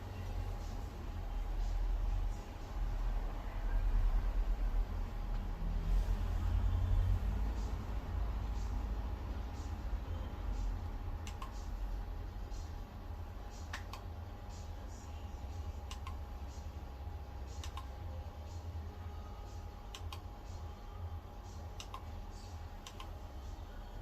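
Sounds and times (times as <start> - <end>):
faint steady tone: 0.0 - 24.0
low steady hum: 0.0 - 24.0
light clicks: 11.2 - 11.6, 15.9 - 16.2, 17.6 - 17.9, 21.8 - 22.1, 22.8 - 23.2.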